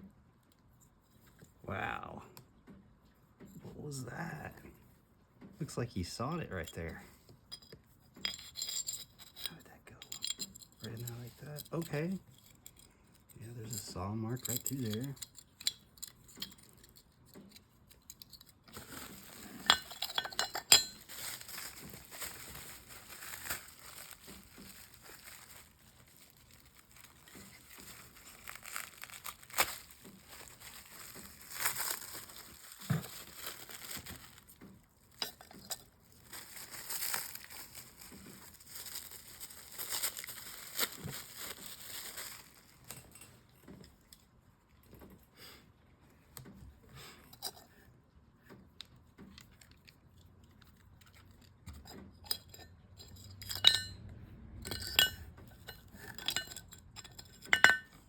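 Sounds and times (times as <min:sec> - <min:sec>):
stone clinking against stone: 0:07.5 - 0:12.9, 0:18.0 - 0:25.6, 0:35.2 - 0:38.1, 0:52.2 - 0:54.0, 0:54.7 - 0:58.0
packing material crinkling: 0:18.0 - 0:43.3.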